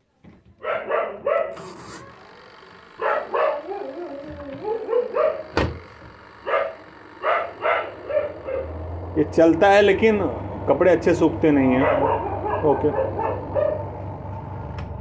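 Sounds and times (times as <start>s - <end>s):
dog barking: 0.6s - 1.6s, 3.0s - 5.6s, 6.4s - 8.8s, 11.7s - 14.0s.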